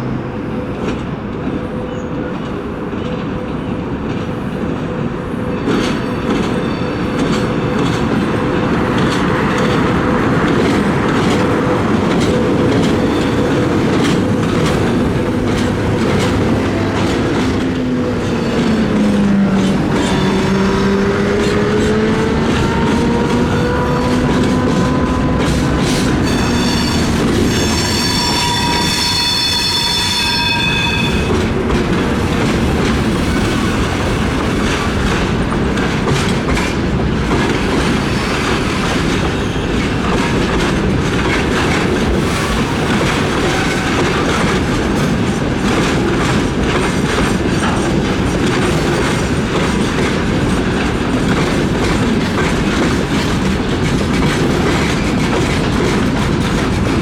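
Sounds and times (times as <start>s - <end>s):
train passing with clattering wheels: 0.0s - 57.0s
high wheel squeal: 26.1s - 31.4s.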